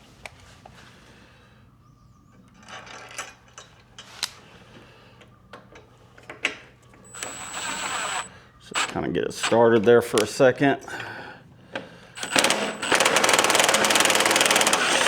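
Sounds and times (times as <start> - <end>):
rapid mechanical clicking: 12.2 - 15.0.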